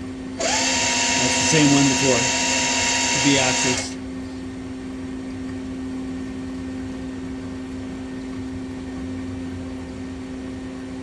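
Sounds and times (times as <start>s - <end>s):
lathe spindle whining: 0.4s - 4.0s.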